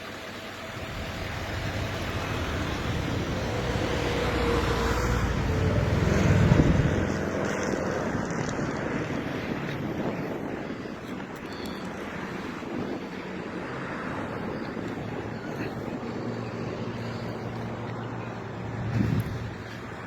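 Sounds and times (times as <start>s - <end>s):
motor vehicle passing by: 0.6s - 10.2s, 13.8s - 20.0s
wind on microphone: 0.8s - 20.0s.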